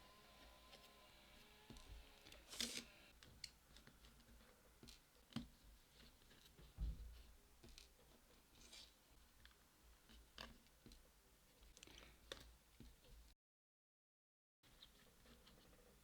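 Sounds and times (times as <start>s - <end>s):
screwdriver clicks and scrapes: 1.7s - 3.9s
soft thump: 6.8s - 7.2s.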